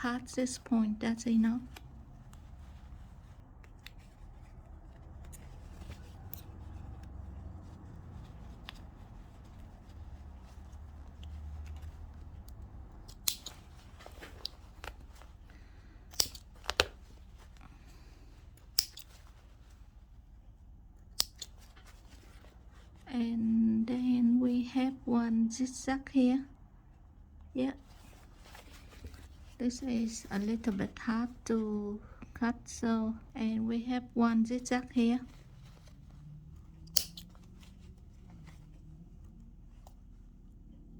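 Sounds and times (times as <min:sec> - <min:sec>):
low steady rumble: 0:00.0 - 0:40.9
scissors snipping thread: 0:06.0 - 0:07.1, 0:11.7 - 0:13.7, 0:16.0 - 0:16.9, 0:18.4 - 0:19.2, 0:21.0 - 0:21.8, 0:36.8 - 0:37.4.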